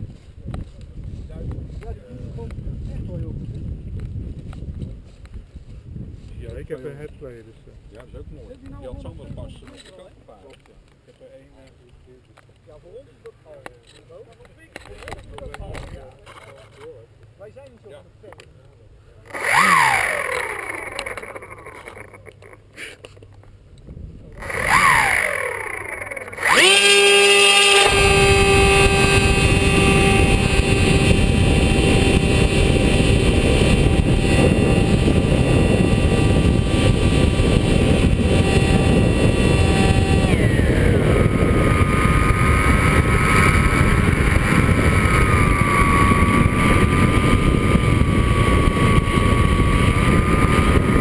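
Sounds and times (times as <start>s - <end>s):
wind rush over microphone: 0.0s - 6.8s, 23.8s - 25.5s, 26.4s - 51.0s
electric motor whine: 19.3s - 22.6s, 24.4s - 51.0s.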